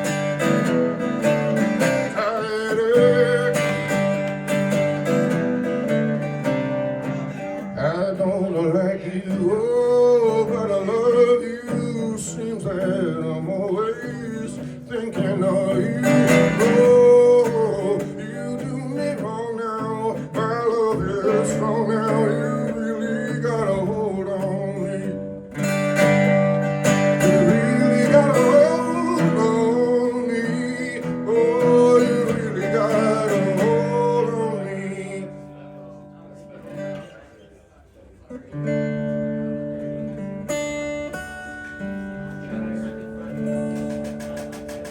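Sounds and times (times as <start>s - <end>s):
strummed acoustic guitar: 0.0s - 37.5s, 38.2s - 44.9s.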